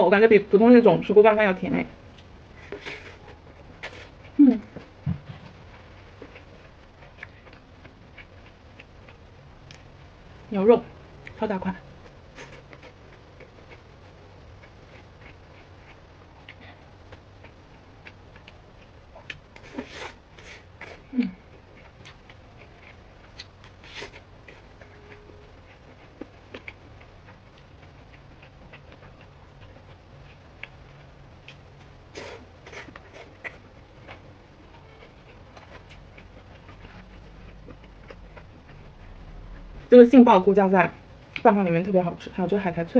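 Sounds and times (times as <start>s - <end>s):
chewing and mouth smacks: 6.0s - 9.8s, 34.8s - 39.1s.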